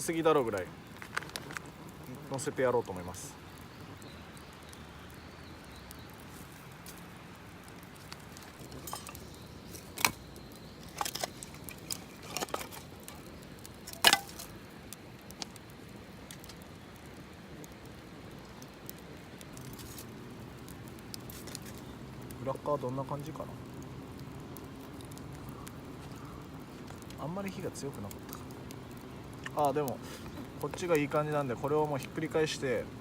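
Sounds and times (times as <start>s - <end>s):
steady background hiss: 0.0s - 33.0s
cooking gear clinking: 8.6s - 10.2s, 10.8s - 13.2s, 13.8s - 14.5s.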